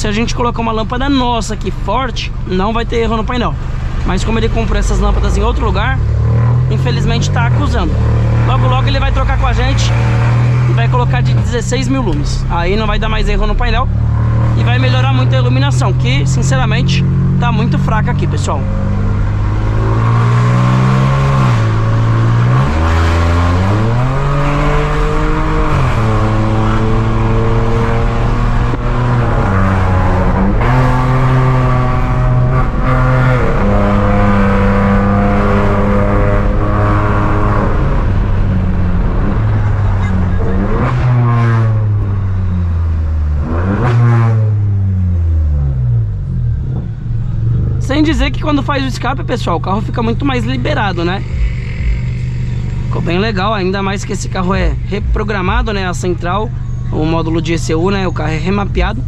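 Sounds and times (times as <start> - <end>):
car engine accelerating: 0.0 - 59.0.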